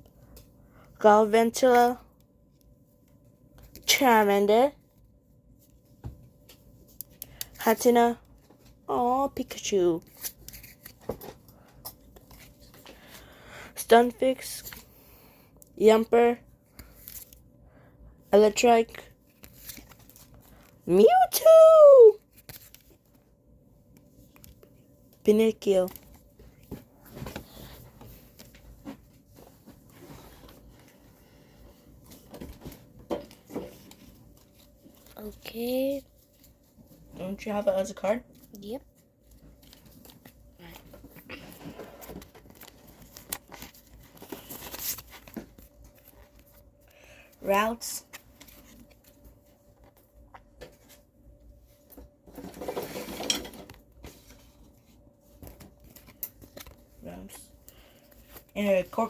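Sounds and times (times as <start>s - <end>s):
trading cards rustling: 9.0s - 13.3s, 18.6s - 21.1s, 38.4s - 46.8s.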